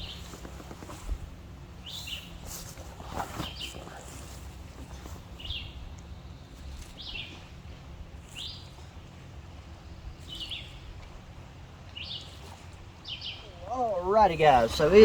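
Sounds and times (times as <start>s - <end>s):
low steady rumble: 0.0s - 15.0s
bird calling: 13.1s - 15.0s.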